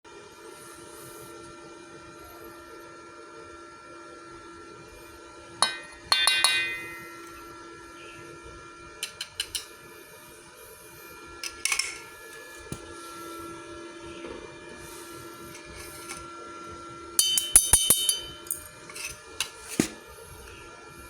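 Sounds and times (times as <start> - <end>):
steady hum: 5.1 - 21.0
metallic clinks and taps: 9.0 - 9.7, 17.2 - 20.0.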